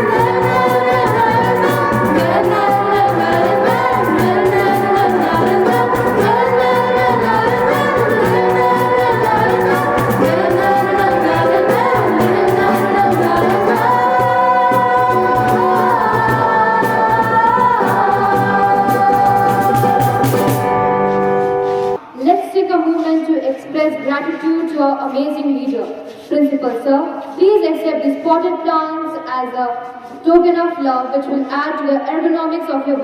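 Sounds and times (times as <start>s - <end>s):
choir singing: 0.0s - 22.0s
musical accompaniment: 0.0s - 22.0s.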